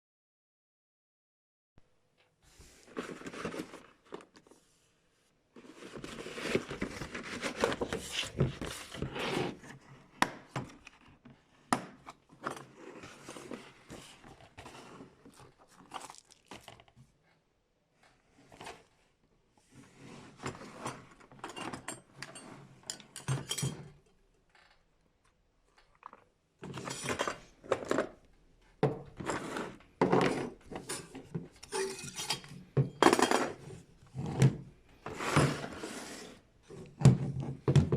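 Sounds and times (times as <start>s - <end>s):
packaging rustling: 2.8s - 4.6s, 15.3s - 16.8s
clattering and clinking: 20.8s - 24.0s.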